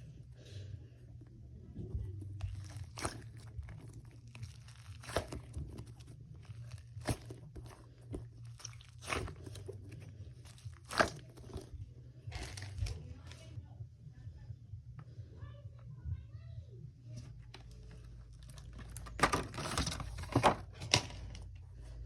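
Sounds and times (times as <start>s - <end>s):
crinkly packaging rustling: 2.2s - 11.7s, 12.3s - 13.5s, 17.5s - 21.6s.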